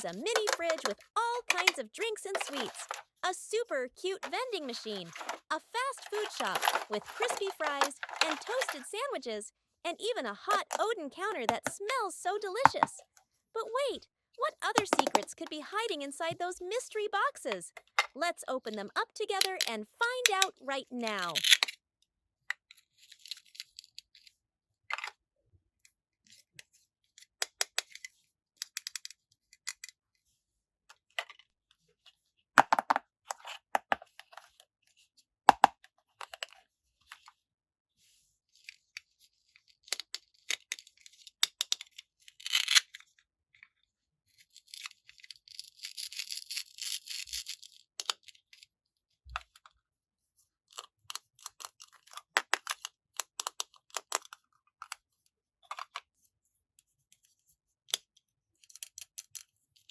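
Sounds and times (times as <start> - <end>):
toy packaging being handled: 0.0 - 13.0, 13.6 - 21.8, 22.6 - 25.2, 38.0 - 48.7
packaging rustling and tearing: 5.0 - 8.8.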